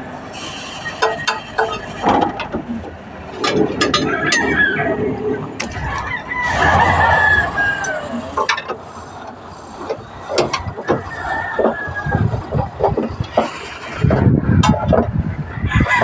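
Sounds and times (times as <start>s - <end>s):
sharp knocks and clanks: 1.0s - 6.1s, 9.8s - 15.2s
rooster crowing: 4.0s - 8.4s, 15.6s - 16.0s.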